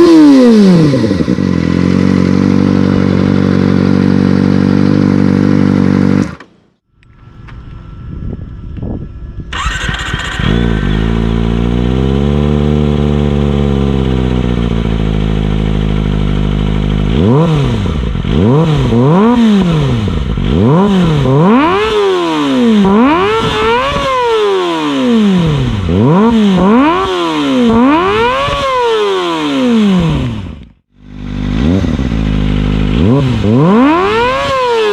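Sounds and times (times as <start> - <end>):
motorcycle engine idling: 0.0 - 6.2, 7.3 - 19.0, 29.8 - 33.9
engine revving: 0.0 - 6.5, 9.5 - 34.9.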